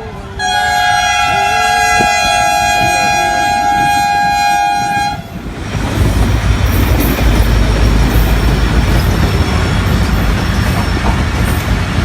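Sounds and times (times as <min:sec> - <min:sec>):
train horn blast: 0:00.0 - 0:05.4
train rumbling past: 0:00.0 - 0:12.0.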